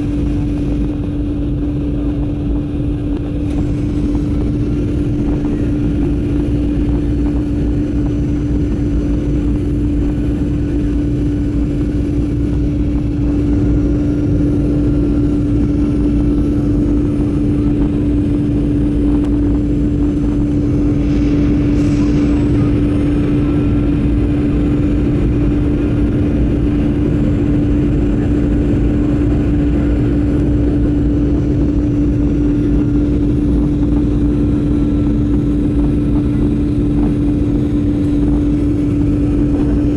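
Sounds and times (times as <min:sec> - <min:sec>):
airliner cabin engine drone: 0:00.0 - 0:39.9.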